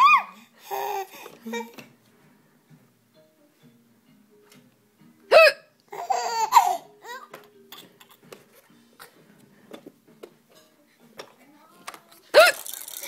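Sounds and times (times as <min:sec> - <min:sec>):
woman hiccuping: 0:05.3 - 0:05.7
baby laughing: 0:05.9 - 0:08.2.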